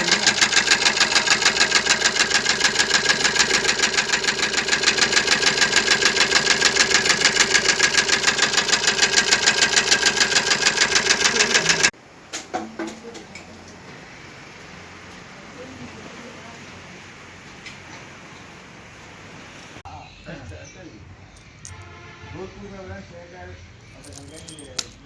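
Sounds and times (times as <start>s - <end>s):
diesel engine clattering: 0.0s - 11.9s.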